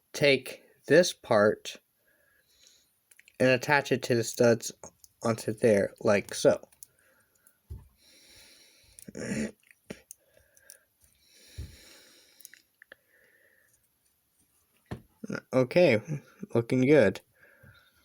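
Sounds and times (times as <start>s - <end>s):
soft breathing: 2.0s - 3.0s, 6.9s - 9.2s, 10.2s - 13.9s, 17.4s - 18.0s.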